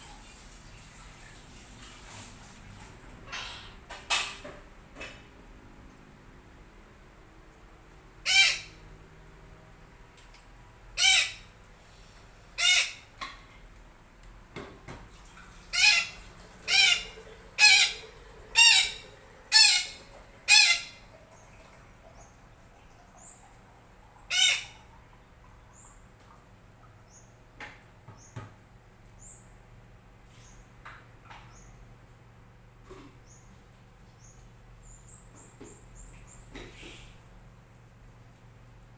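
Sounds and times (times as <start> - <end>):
parakeet squawking: 8.2 - 8.8, 11.0 - 11.5, 12.6 - 13.1, 15.7 - 21.0, 24.3 - 24.8
small birds chirping: 33.2 - 37.1.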